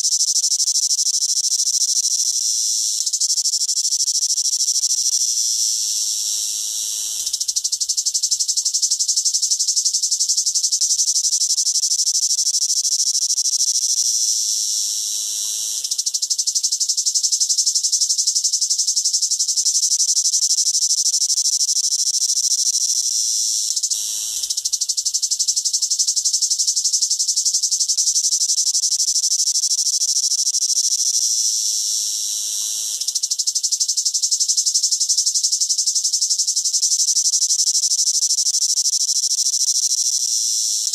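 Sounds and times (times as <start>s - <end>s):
cicada buzzing: 0.0s - 40.9s.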